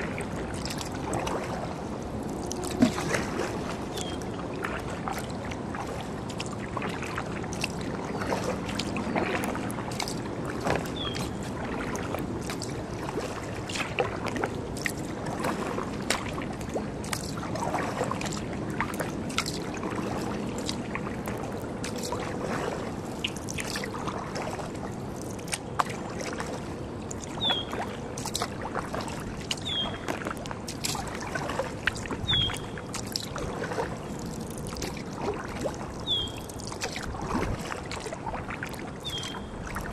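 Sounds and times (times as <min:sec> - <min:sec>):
paddle splashing in water: 0:00.0 - 0:39.9
water dripping: 0:00.6 - 0:01.4, 0:08.7 - 0:15.1, 0:16.1 - 0:22.3, 0:23.2 - 0:24.5, 0:27.1 - 0:39.9
bird chirping: 0:29.6 - 0:30.0, 0:32.3 - 0:32.7, 0:36.0 - 0:36.4, 0:39.0 - 0:39.5.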